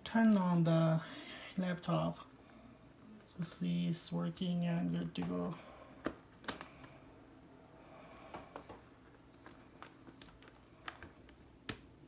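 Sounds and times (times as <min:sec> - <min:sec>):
hands handling a laptop: 0:05.0 - 0:07.0, 0:08.3 - 0:12.0.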